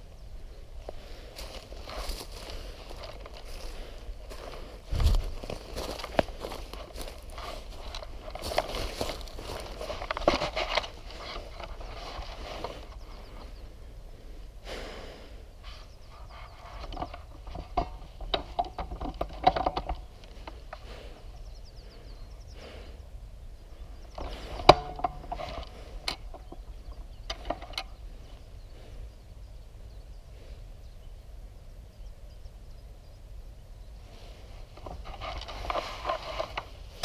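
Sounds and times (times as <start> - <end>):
rustling: 0.8 - 13.7, 34.0 - 37.0.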